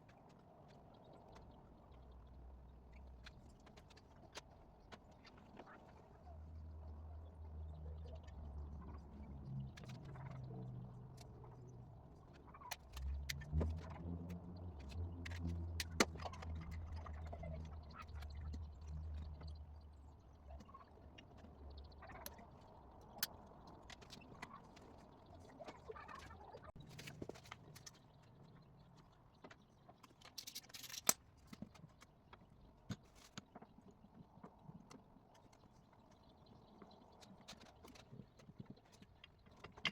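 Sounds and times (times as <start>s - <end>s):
low steady hum: 5.9s - 27.2s
faint clicks and knocks: 8.1s - 39.9s.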